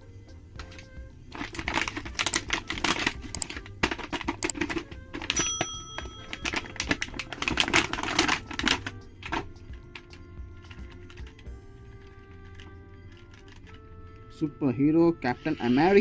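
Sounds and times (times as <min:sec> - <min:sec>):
plastic packaging crinkling: 0:01.3 - 0:05.4, 0:06.2 - 0:09.4.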